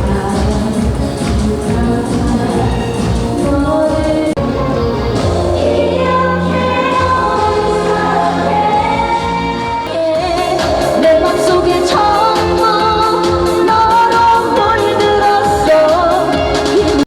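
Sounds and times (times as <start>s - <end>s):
choir singing: 1.5s - 15.2s.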